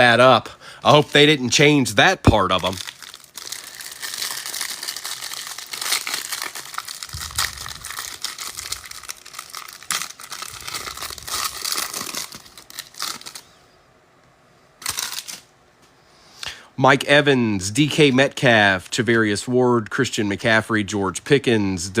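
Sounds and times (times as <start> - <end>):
plastic wrapping crinkling: 2.3 - 13.5, 14.8 - 15.5.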